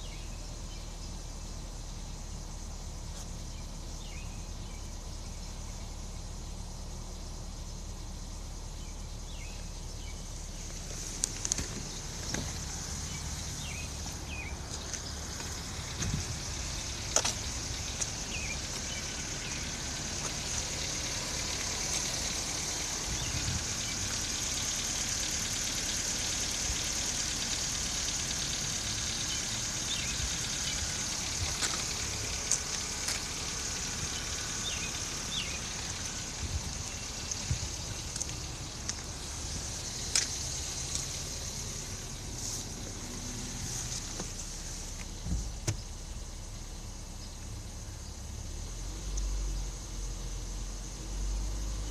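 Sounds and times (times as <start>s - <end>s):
car engine idling: 0.0s - 51.9s
engine tapping: 0.0s - 51.9s.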